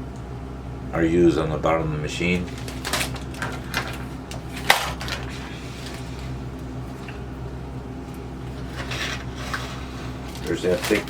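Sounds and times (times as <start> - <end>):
metal parts clinking and rattling: 2.4 - 6.3, 8.6 - 11.0.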